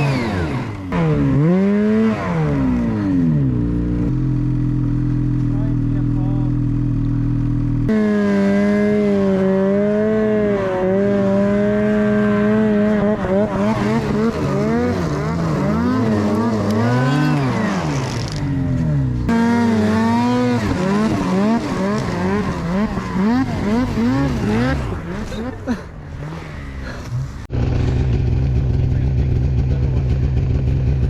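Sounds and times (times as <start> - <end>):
snowmobile engine revving: 0.0 - 31.0.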